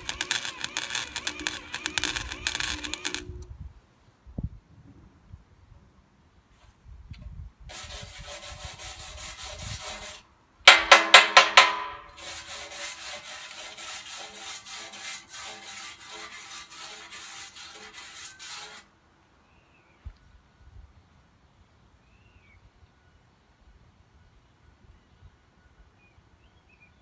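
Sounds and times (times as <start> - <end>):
welding arc crackling: 0.0 - 3.5.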